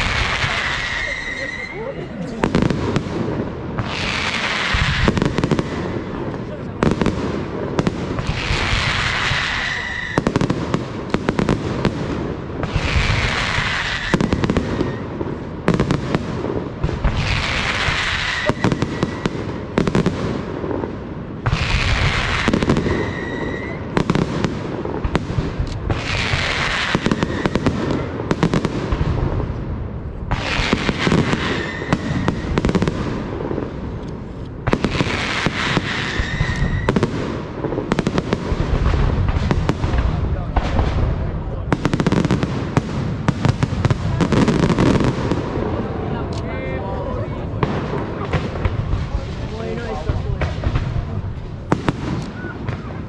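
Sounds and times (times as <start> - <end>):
whistling firework descending: 0.0 - 2.6, 8.2 - 10.6, 12.7 - 15.2, 17.2 - 19.5, 21.6 - 24.1, 26.0 - 28.1, 30.3 - 32.7, 34.8 - 37.5
fireworks bangs and crackling: 0.0 - 53.0.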